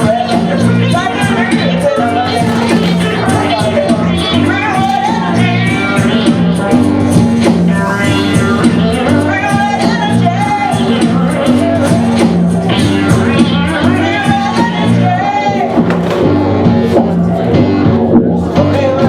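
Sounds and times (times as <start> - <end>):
person singing: 0.0 - 19.0
live band playing: 0.2 - 19.0.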